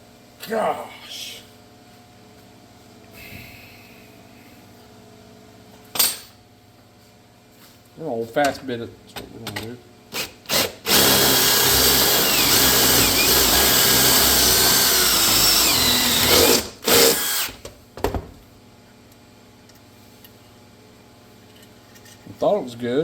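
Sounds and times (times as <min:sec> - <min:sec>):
power drill boring a hole: 0:10.2 - 0:17.6.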